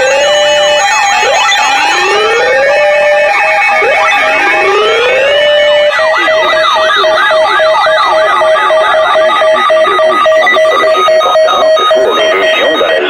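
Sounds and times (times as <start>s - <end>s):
electronic siren yelping: 0.0s - 13.0s
fast-pulsing alert beep: 0.0s - 13.0s.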